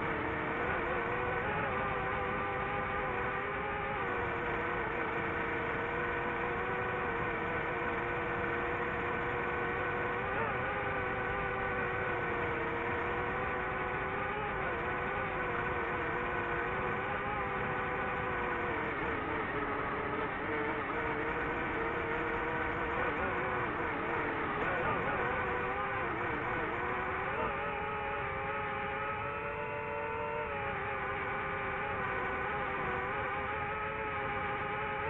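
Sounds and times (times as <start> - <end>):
drone propellers whining: 0.0 - 35.0.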